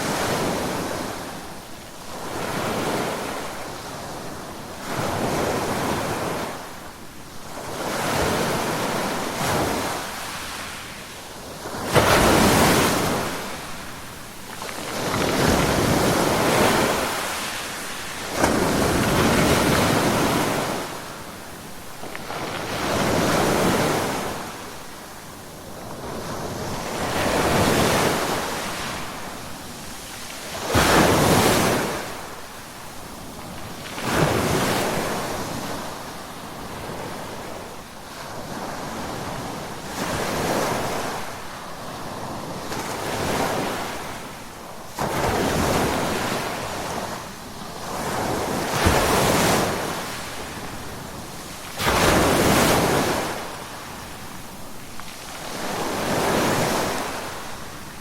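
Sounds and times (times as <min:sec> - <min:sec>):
ocean waves breaking on shore: 0:00.0 - 0:58.0.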